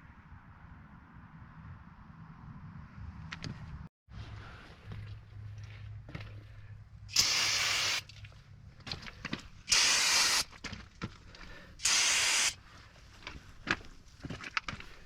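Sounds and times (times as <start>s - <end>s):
pressurised spray hissing: 7.1s - 8.0s, 9.7s - 10.5s, 11.8s - 12.6s.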